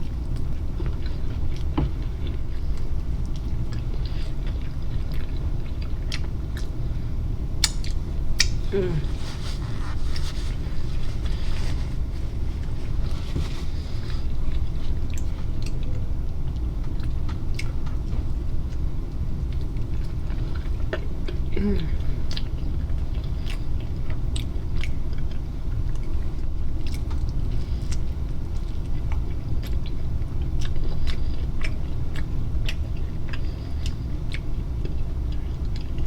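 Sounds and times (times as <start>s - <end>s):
chewing and biting food: 0.0s - 21.5s, 22.2s - 36.0s
sharp mouth clicks: 7.6s - 8.9s.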